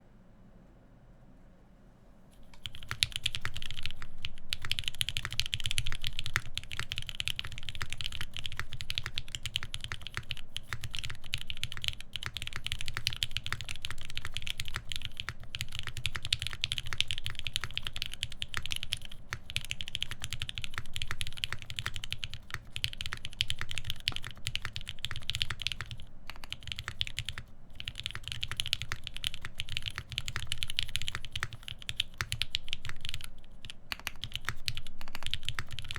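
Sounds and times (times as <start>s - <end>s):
fast typing on mechanical keyboard: 2.4s - 35.9s.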